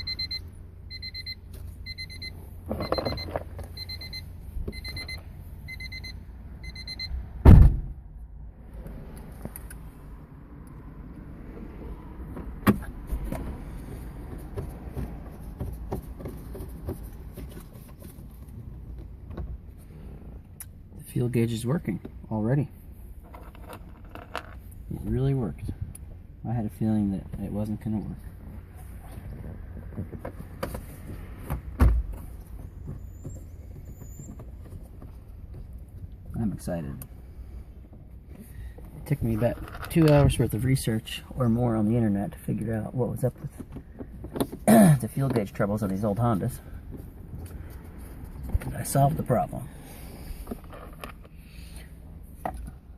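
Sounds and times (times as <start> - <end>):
car warning chime beeping: 0.0 - 7.3
knocks and clunks in car: 2.2 - 5.2, 7.4 - 8.0, 12.3 - 19.6, 29.1 - 36.3, 43.3 - 45.6
car door shutting: 7.4 - 8.0, 12.3 - 13.6, 29.2 - 34.8
low rumble with clicks: 21.8 - 41.6.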